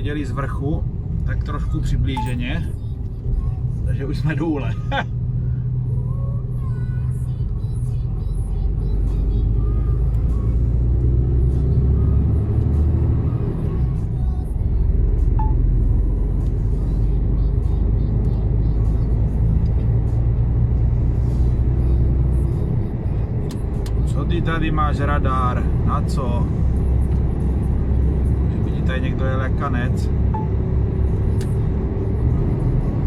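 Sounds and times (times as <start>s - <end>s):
diesel truck engine droning: 0.0s - 33.0s.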